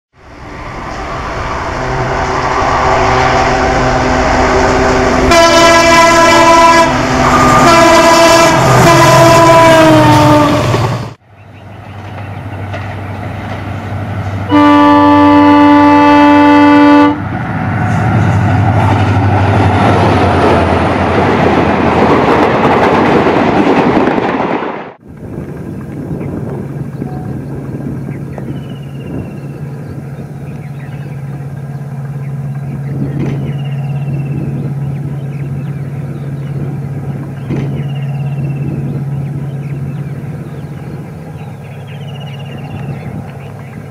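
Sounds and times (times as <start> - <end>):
diesel locomotive passing: 0.1 - 43.9
locomotive air horn blasts: 1.7 - 10.8, 14.5 - 17.2.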